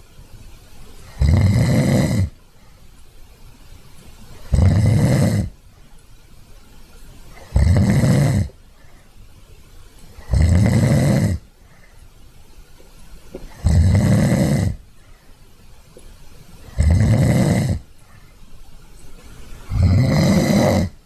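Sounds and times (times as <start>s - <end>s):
dog snoring: 1.1s - 2.4s, 4.4s - 5.6s, 7.4s - 8.6s, 10.2s - 11.5s, 13.5s - 14.8s, 16.6s - 17.9s, 19.6s - 21.0s.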